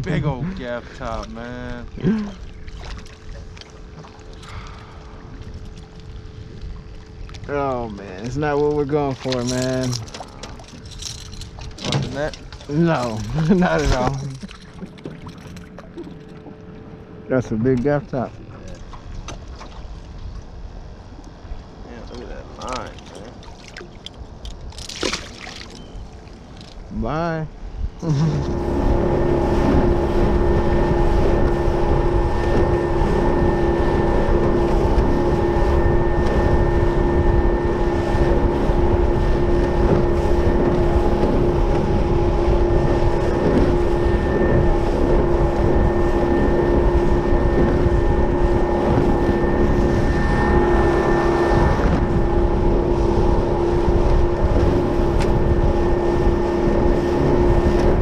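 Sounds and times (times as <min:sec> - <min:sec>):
outboard motor running: 0:00.0 - 0:58.0
wind noise on microphone: 0:27.6 - 0:58.0.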